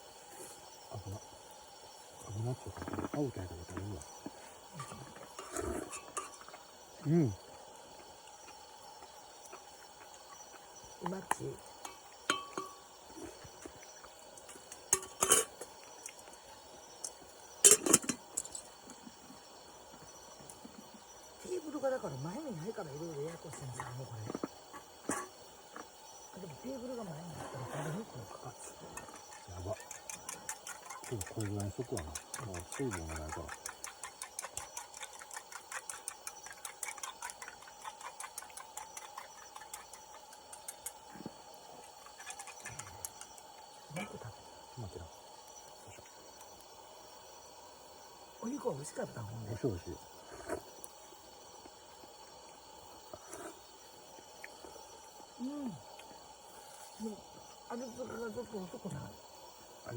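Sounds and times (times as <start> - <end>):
campfire crackling: 0.0 - 59.9
sharp pops of burning wood: 28.7 - 44.7.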